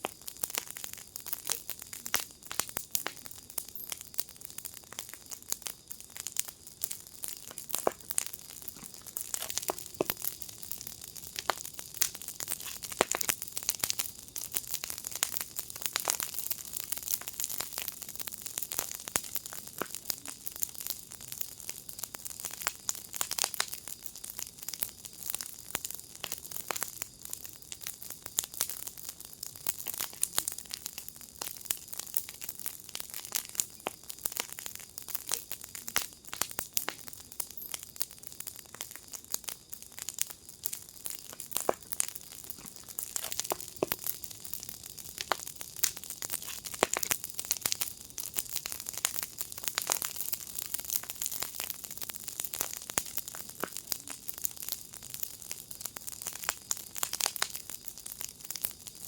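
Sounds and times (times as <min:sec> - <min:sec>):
fire hissing: 0:00.0 - 0:57.8
wood fire crackling and popping: 0:00.0 - 0:59.0.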